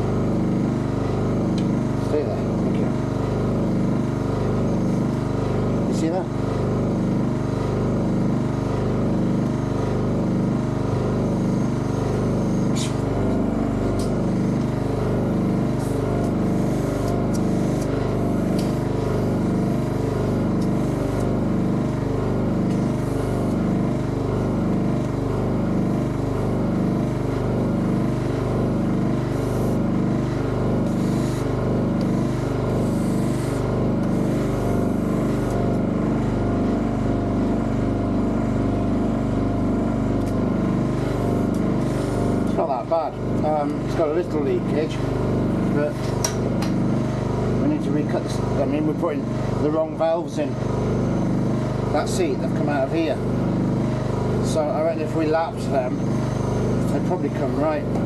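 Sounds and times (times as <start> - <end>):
machine humming with pulsing beat: 0.0 - 58.0.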